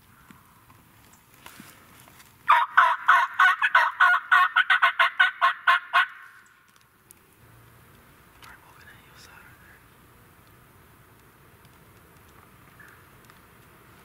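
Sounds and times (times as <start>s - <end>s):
turkey yelping: 2.5s - 6.4s.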